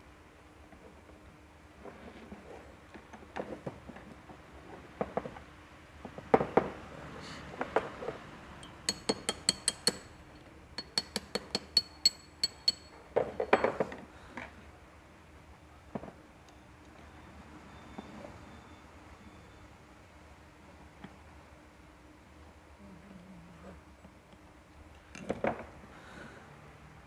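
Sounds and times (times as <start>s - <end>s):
metal tools clinking and knocking: 8.6s - 10.2s, 10.8s - 13.8s
sharp ringing metallic clicks: 8.6s - 13.0s.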